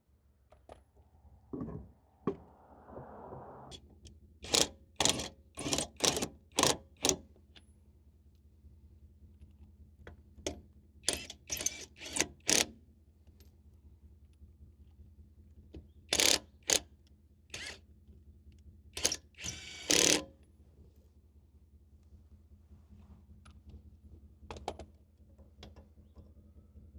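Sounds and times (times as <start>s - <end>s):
cordless impact wrench bursts: 16.1s - 16.8s, 19.0s - 20.2s.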